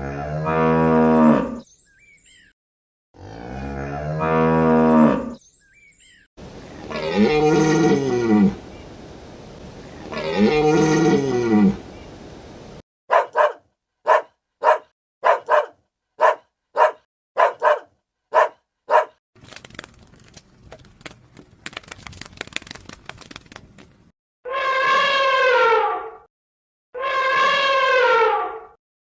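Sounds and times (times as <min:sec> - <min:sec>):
long pitched animal call: 0:10.0 - 0:11.9, 0:24.4 - 0:26.2, 0:27.0 - 0:28.8
dog barking: 0:13.1 - 0:19.2.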